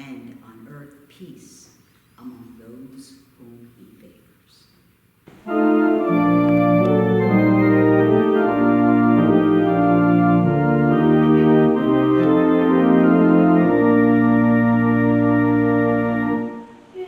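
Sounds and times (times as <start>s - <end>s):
organ playing hymn chords: 5.3s - 17.0s.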